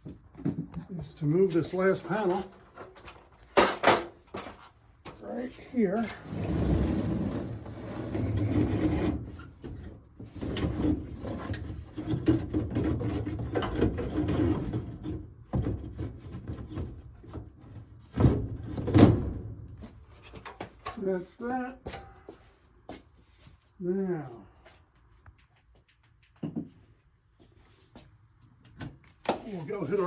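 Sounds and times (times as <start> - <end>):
ceiling panel scraping: 5.9 - 19.0.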